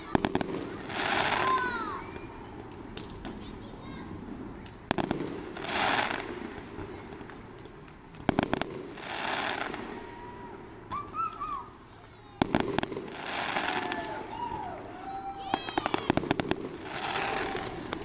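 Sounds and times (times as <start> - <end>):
fireworks bangs: 0.0 - 18.0
fireworks crackling hiss: 0.0 - 18.0.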